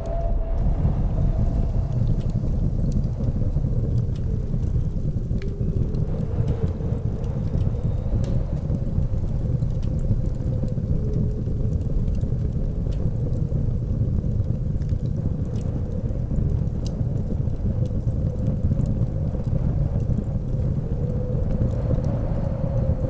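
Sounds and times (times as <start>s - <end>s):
wavering wind whistle: 0.0s - 3.6s
blizzard wind rumbling: 0.0s - 23.0s
wood fire crackling: 0.0s - 23.0s.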